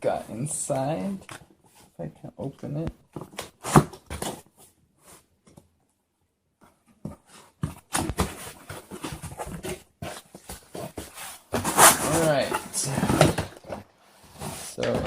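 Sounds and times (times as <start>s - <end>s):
cardboard packaging rustling: 7.3s - 15.0s.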